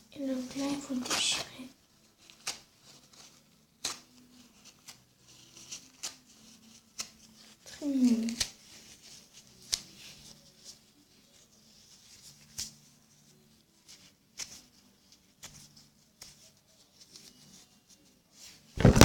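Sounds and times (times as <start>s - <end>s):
rustling noise: 0.2s - 19.0s
toilet paper tearing: 18.8s - 19.0s.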